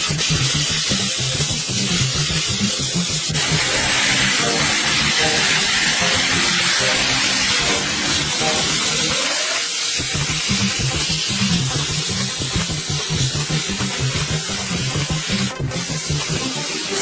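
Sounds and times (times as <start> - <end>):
electronic music: 2.0 - 17.0
water spray hissing: 3.3 - 17.0.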